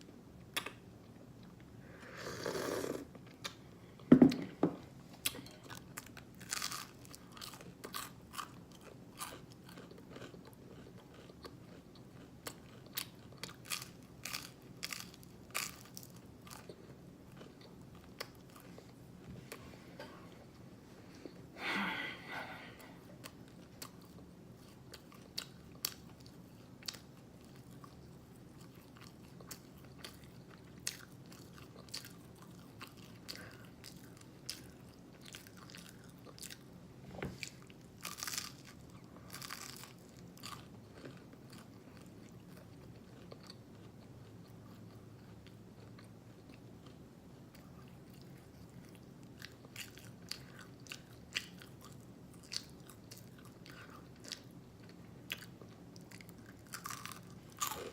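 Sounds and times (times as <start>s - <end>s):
faint low hum: 0.0s - 57.9s
chewing and lip smacking: 5.2s - 18.8s.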